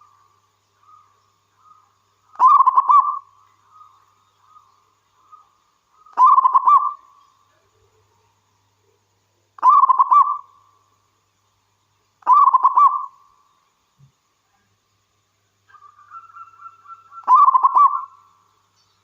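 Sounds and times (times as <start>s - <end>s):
dove cooing: 2.4s - 3.3s, 6.1s - 7.0s, 9.6s - 10.4s, 12.2s - 13.1s, 15.8s - 18.1s.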